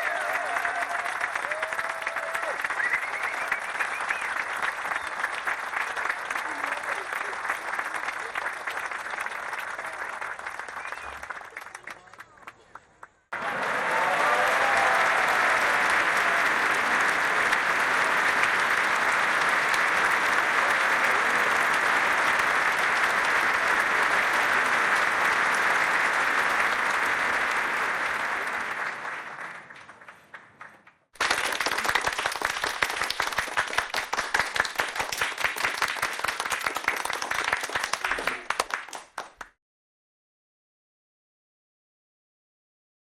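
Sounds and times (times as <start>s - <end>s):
crowd applauding: 0.0s - 39.6s
sharp separate claps: 8.8s - 39.5s.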